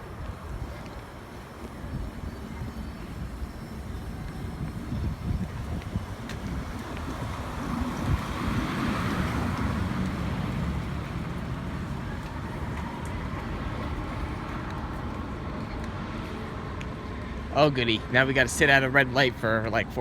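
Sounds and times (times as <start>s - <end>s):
low traffic rumble: 0.0s - 20.0s
vehicle passing: 4.4s - 19.2s.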